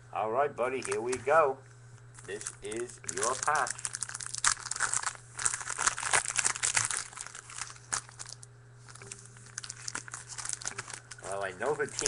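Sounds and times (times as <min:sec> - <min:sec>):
quiet handling noise: 0:00.6 - 0:04.0, 0:06.7 - 0:12.0
wrapper crinkling and tearing: 0:00.8 - 0:01.2, 0:02.2 - 0:12.0.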